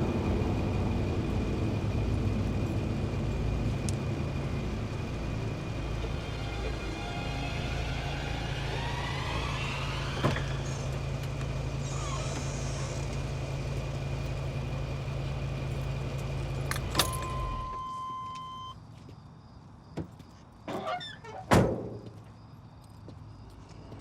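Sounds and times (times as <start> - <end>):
car engine idling: 0.0 - 17.8.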